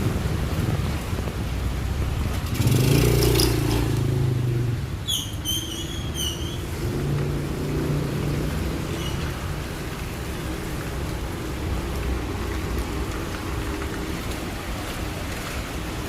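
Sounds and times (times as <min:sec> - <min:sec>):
rain: 0:00.0 - 0:16.0
vehicles passing on wet road: 0:00.0 - 0:16.0
high squeaky chirps: 0:05.0 - 0:06.7.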